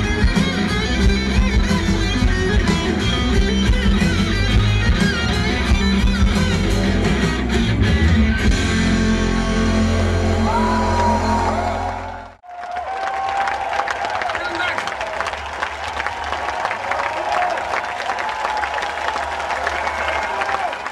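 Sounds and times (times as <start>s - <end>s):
drums: 0.0s - 12.2s
live rock band playing: 0.0s - 12.3s
electric guitar chords: 0.0s - 12.4s.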